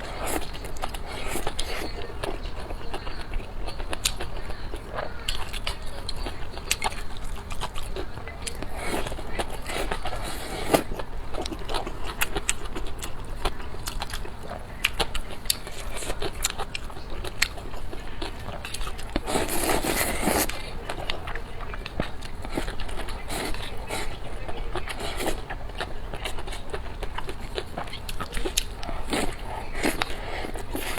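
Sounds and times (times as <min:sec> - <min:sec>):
biting and chewing crunches: 0:00.0 - 0:30.9.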